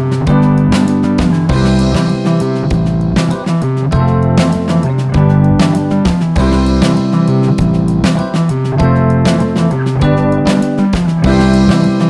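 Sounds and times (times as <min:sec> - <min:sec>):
guitar-led instrumental music: 0:00.0 - 0:12.0.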